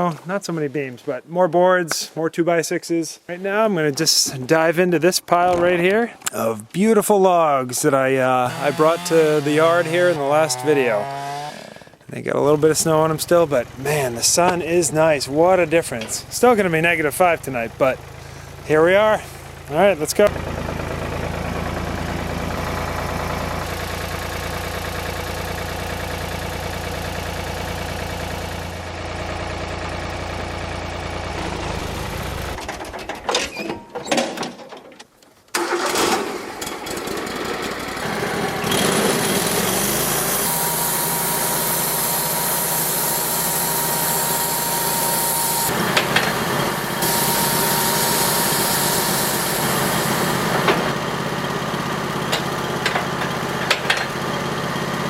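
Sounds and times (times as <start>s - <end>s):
sawmill engine running: 7.7s - 33.4s, 35.5s - 55.0s
thin steady whine: 40.1s - 50.9s.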